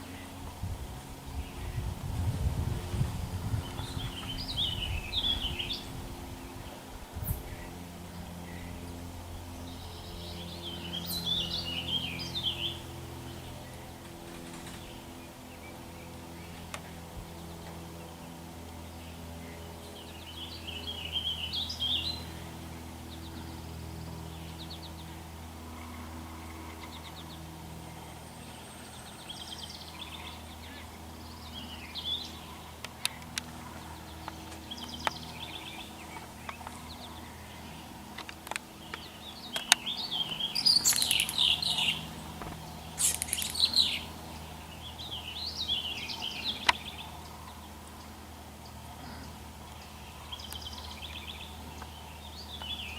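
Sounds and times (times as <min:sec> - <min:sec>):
steady low hum: 0:00.0 - 0:52.9
birds chirping and calling: 0:03.0 - 0:52.9
sharp clicks: 0:38.2 - 0:44.0.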